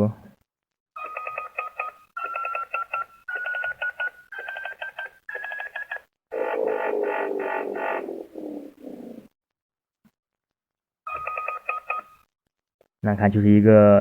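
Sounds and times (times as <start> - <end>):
rapid electronic beeps: 6.3 - 8.1
harsh electronic buzzing tone: 6.3 - 8.8.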